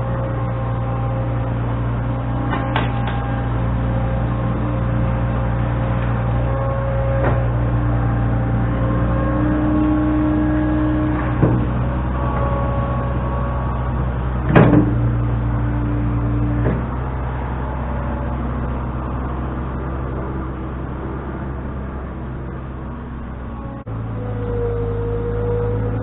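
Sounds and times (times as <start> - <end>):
loader engine running: 0.0 - 26.0
metallic clunks: 2.5 - 3.3, 14.5 - 15.1.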